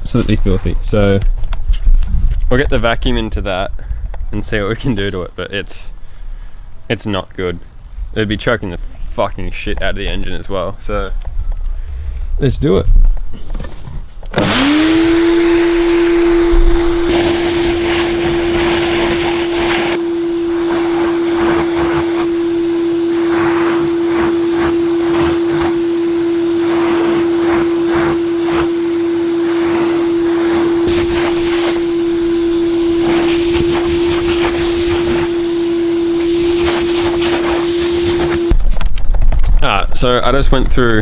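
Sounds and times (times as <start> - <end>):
vacuum cleaner motor whine: 13.6 - 39.1.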